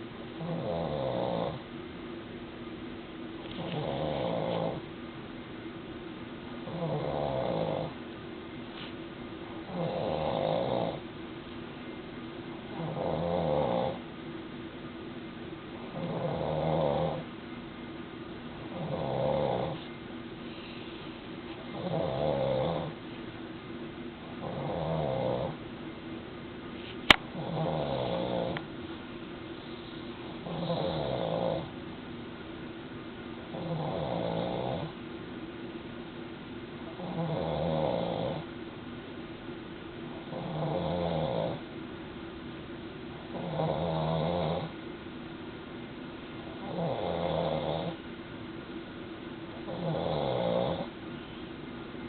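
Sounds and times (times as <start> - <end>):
man snoring: 0.4 - 1.6, 3.6 - 4.8, 6.7 - 7.9, 9.7 - 11.0, 12.8 - 14.0, 16.0 - 17.2, 18.7 - 19.8, 21.8 - 23.0, 24.4 - 25.6, 27.4 - 28.6, 30.4 - 31.7, 33.5 - 35.0, 37.0 - 38.5, 40.3 - 41.6, 43.3 - 44.8, 46.6 - 48.0, 49.7 - 50.9.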